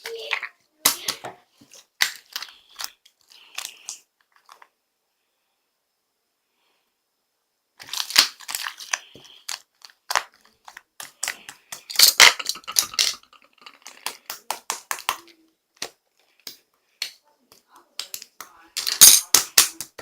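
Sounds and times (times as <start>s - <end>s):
crunching and crinkling: 7.8s - 14.3s.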